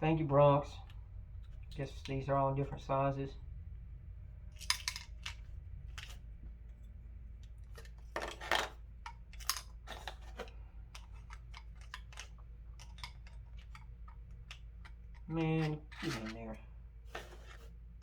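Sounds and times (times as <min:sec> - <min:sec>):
low steady hum: 0:00.0 - 0:18.0
metal tools clicking and scraping: 0:04.6 - 0:05.4, 0:07.8 - 0:16.6
metal tools clattering: 0:07.8 - 0:13.8.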